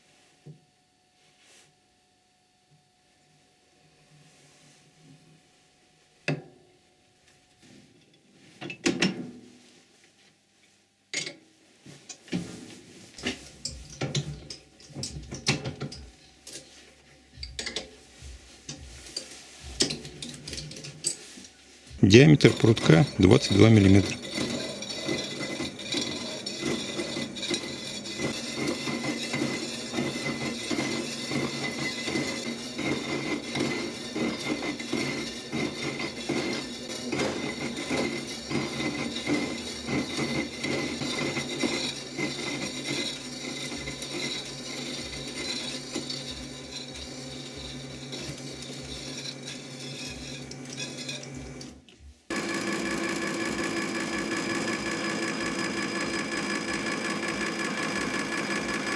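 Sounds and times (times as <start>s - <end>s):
different machine hum: 22.0s - 29.6s
lathe machine hum: 22.0s - 51.2s, 52.3s - 58.9s.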